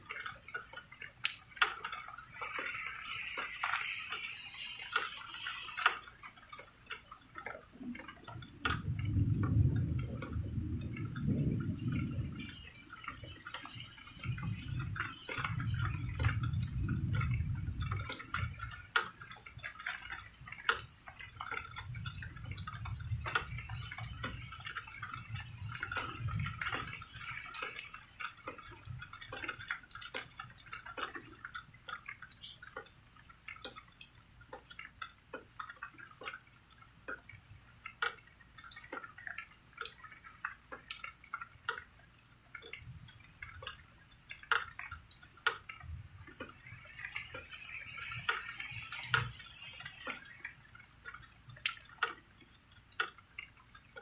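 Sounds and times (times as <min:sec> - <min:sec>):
rain dripping: 0:00.0 - 0:54.0
distant thunder rolling: 0:08.8 - 0:13.3.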